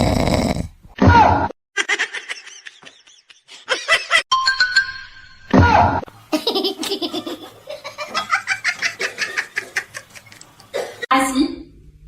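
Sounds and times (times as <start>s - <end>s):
person laughing hard: 1.8s - 4.2s.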